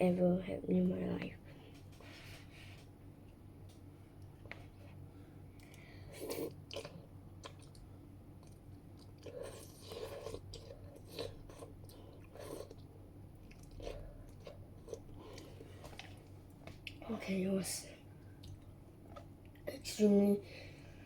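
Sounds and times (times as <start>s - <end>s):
person chewing noodles: 5.5s - 17.0s, 18.2s - 19.6s.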